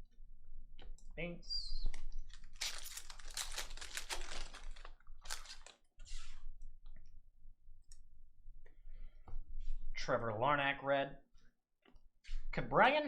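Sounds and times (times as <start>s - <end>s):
foil wrapper rustling: 2.3s - 5.8s.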